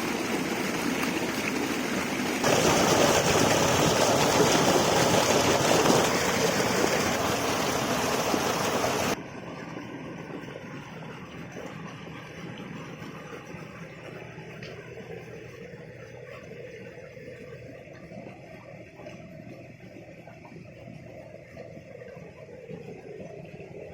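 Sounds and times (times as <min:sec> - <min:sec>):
water rushing: 0:00.0 - 0:23.9.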